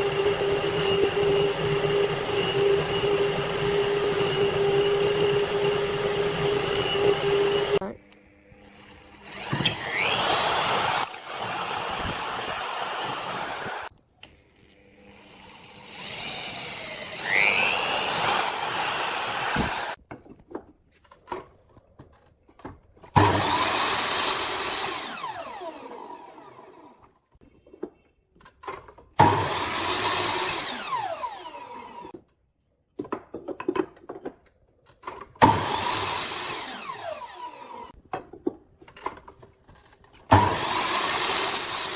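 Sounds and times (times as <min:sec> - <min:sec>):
electric power tool cutting wood: 0:00.0 - 0:07.9, 0:08.5 - 0:13.9, 0:14.7 - 0:20.0, 0:23.2 - 0:27.1, 0:29.2 - 0:32.2, 0:35.4 - 0:38.0, 0:40.3 - 0:41.9.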